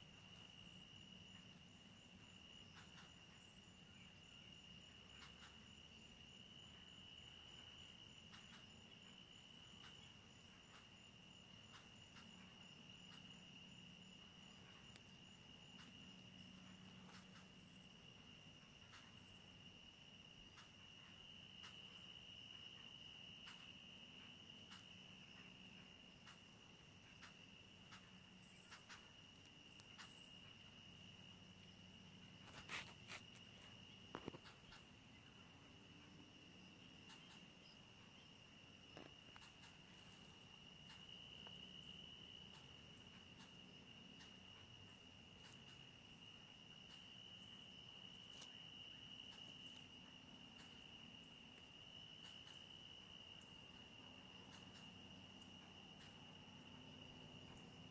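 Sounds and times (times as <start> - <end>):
insect chirps: 0.0 - 57.9
insects trilling: 0.0 - 57.9
faint ticks: 2.6 - 3.5, 5.1 - 5.6, 7.6 - 11.0, 11.6 - 13.4, 14.6 - 17.7, 18.8 - 19.3, 20.5 - 22.0, 22.8 - 30.6, 32.4 - 35.3, 37.0 - 38.2, 38.9 - 41.7, 42.4 - 46.0, 48.1 - 50.8, 51.5 - 52.7, 54.4 - 56.2.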